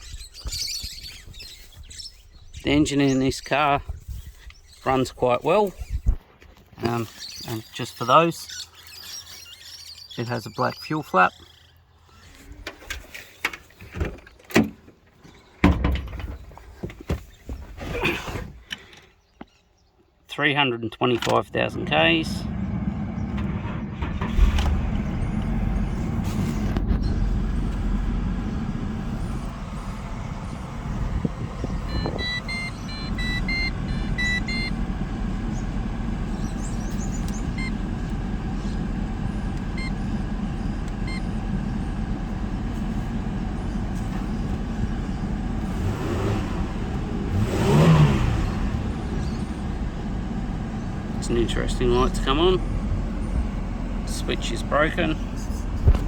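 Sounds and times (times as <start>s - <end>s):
car engine idling: 21.4s - 56.0s
electronic beeps: 31.7s - 34.8s.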